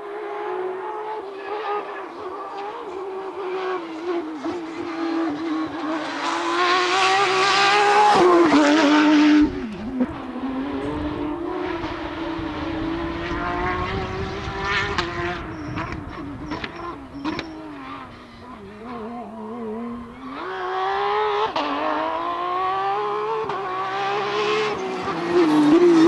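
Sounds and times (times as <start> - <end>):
rally car engine passing at high revs: 0.0 - 26.0.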